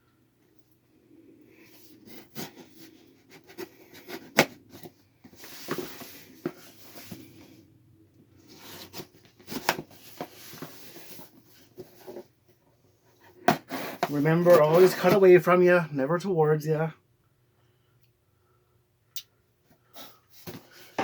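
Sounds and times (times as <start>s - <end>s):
cardboard scraping and rustling: 1.8s - 7.6s, 8.4s - 12.3s, 13.4s - 15.4s.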